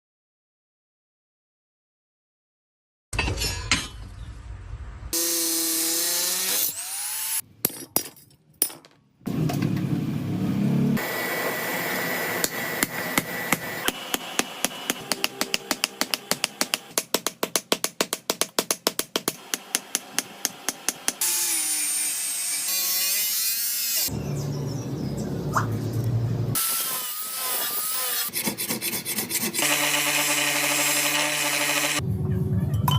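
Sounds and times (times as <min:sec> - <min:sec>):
hissing power tool: 0:11.0 - 0:16.7
hammer striking metal: 0:12.4 - 0:21.2.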